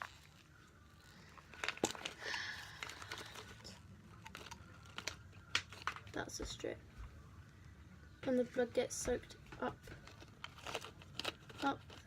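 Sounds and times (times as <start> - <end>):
packaging rustling and crinkling: 0.0 - 6.2, 9.6 - 12.0.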